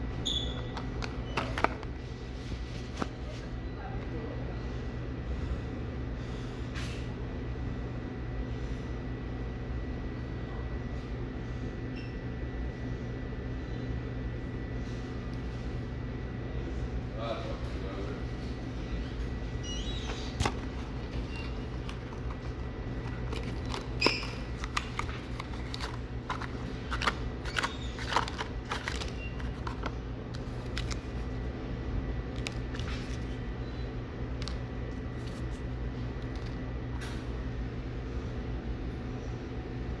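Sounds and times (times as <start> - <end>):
steady low hum: 0.0 - 40.0
packets clicking and rustling: 20.1 - 31.4, 32.3 - 33.4.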